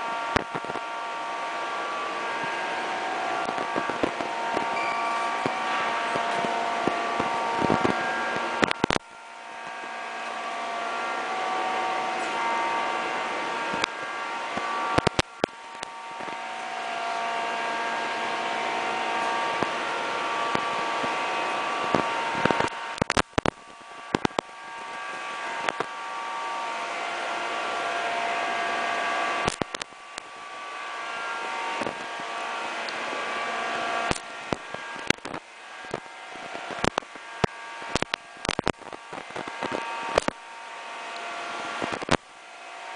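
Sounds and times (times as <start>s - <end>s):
scooter engine running: 0.0s - 40.3s
clicks: 21.9s - 25.9s, 29.4s - 30.3s, 34.0s - 40.4s.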